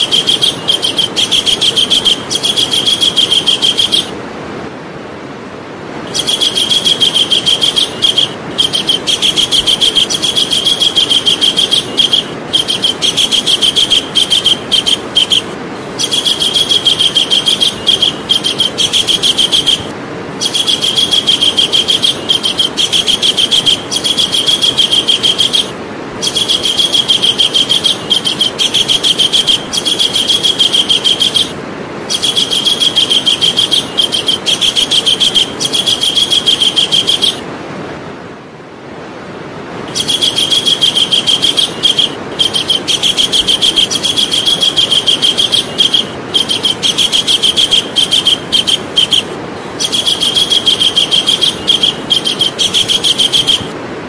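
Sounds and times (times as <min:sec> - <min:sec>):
kingfisher rattling trill: 0:00.0 - 0:04.2, 0:06.1 - 0:37.4, 0:39.9 - 0:53.8.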